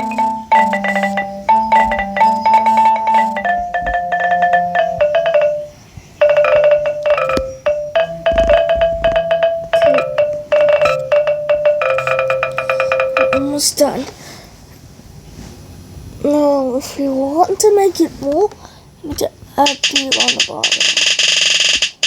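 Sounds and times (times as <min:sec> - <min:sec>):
marimba-like melody: 0:00.0 - 0:13.6.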